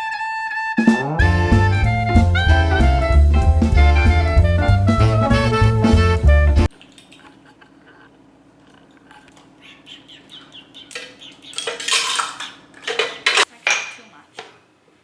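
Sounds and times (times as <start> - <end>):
utensils and dishes clattering: 6.7 - 8.0, 10.9 - 14.6.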